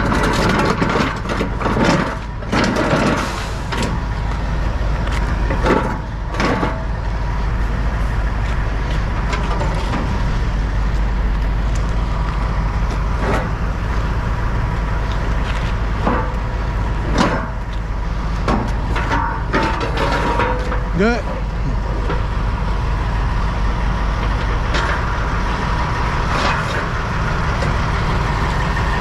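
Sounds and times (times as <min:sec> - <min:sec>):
short clanks and knocks: 0:00.0 - 0:04.0, 0:05.1 - 0:07.0, 0:15.1 - 0:17.8, 0:18.4 - 0:22.2
diesel engine running: 0:00.0 - 0:29.0.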